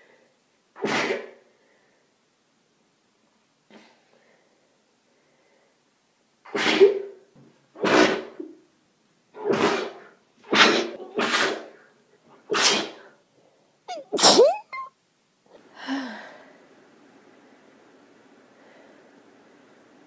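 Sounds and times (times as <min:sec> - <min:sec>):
soft breathy sound: 0:03.7 - 0:05.9, 0:15.5 - 0:16.8
person sneezing: 0:06.5 - 0:07.1, 0:13.9 - 0:14.9.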